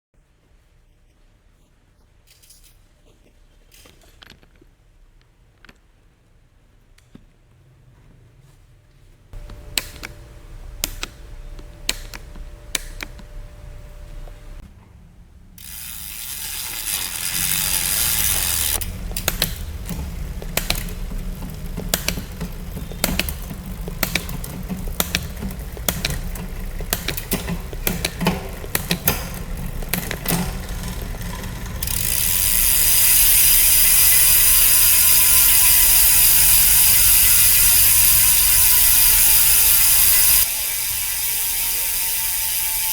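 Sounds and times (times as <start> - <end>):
bicycle freehub ratcheting: 9.4 - 13.2, 15.6 - 42.9.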